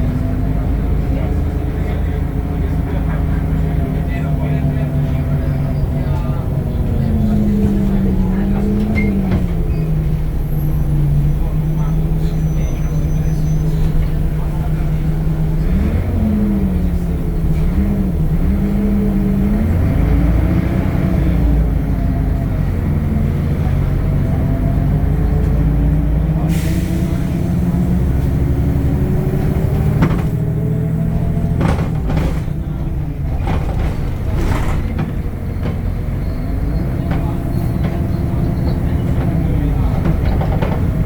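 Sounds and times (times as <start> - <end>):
bus diesel engine running: 0.0 - 41.0
air hiss: 26.5 - 27.9
sharp knocks and rattles: 29.4 - 41.0.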